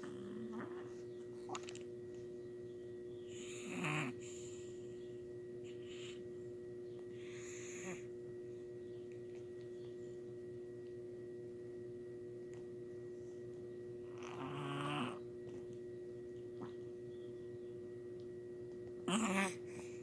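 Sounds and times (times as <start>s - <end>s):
snoring: 0.0s - 0.8s, 3.4s - 4.5s, 14.1s - 15.2s
faint steady hum: 0.0s - 20.0s.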